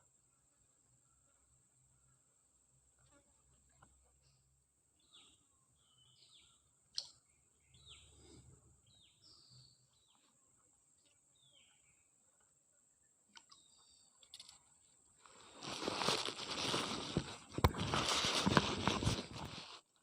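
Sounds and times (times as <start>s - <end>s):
faint bird chirps: 3.9s - 12.2s, 12.9s - 14.5s.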